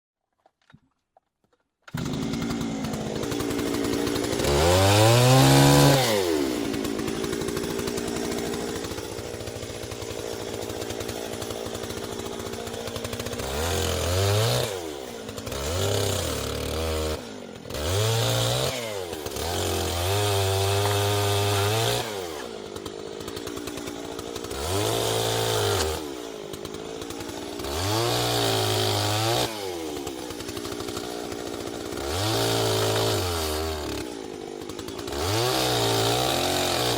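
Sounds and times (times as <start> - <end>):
chainsaw engine revving and idling: 1.9 - 36.9.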